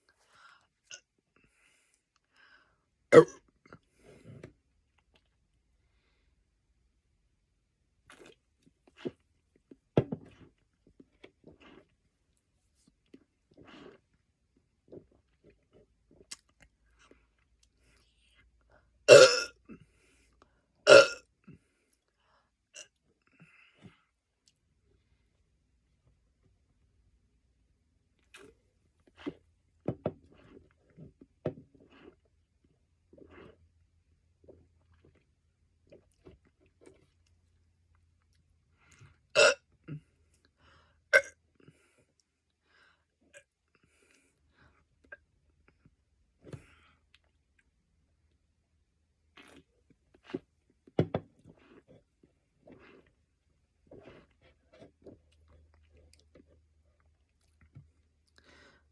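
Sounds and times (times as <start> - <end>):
man burping: 3.1 - 3.4, 19.1 - 19.5, 20.9 - 21.2, 39.4 - 39.6
man belching: 3.2 - 3.4, 19.1 - 19.5, 20.9 - 21.2.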